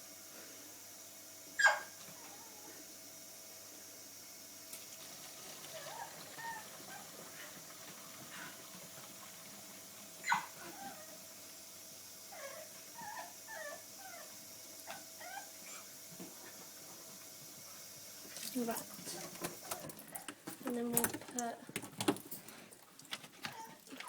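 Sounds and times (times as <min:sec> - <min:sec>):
dog whining: 0:01.6 - 0:02.8, 0:05.7 - 0:07.1, 0:10.2 - 0:11.2, 0:12.3 - 0:15.9, 0:23.4 - 0:24.0.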